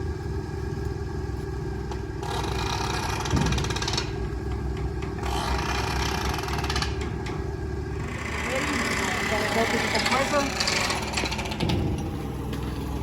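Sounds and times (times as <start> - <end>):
air compressor engine running: 0.0 - 13.0.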